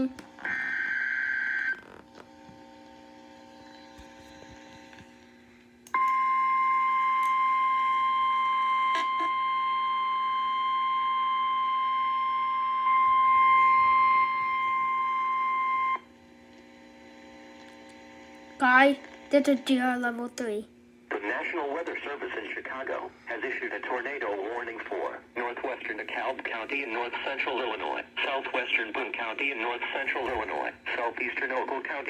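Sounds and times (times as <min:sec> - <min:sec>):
faint hum: 0:00.0 - 0:32.0
high-pitched alarm tone: 0:06.0 - 0:16.0.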